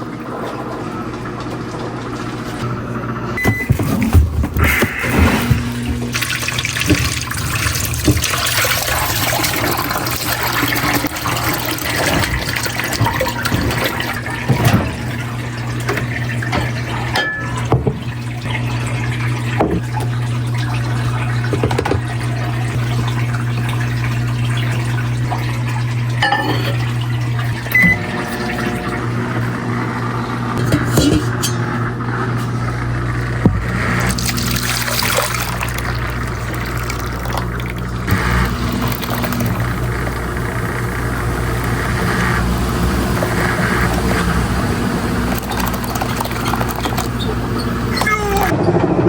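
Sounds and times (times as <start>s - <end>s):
water running and filling: 0.0s - 49.0s
low hum: 26.0s - 47.7s.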